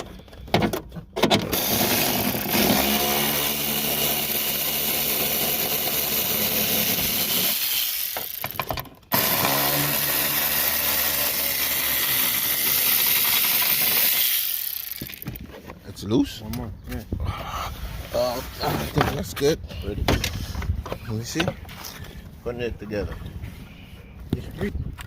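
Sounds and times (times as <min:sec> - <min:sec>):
power drill driving a bolt: 0:01.4 - 0:15.4.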